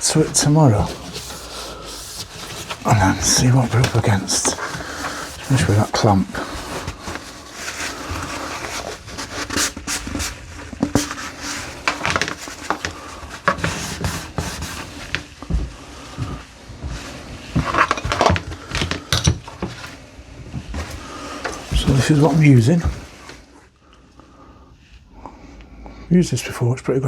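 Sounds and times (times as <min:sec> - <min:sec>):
objects knocking and clicking: 0:17.6 - 0:19.9.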